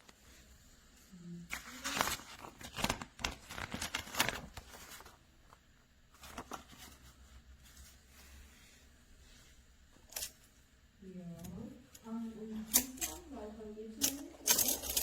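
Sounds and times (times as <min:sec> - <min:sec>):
magnetic blocks clicking: 0:12.7 - 0:13.3, 0:14.0 - 0:15.0.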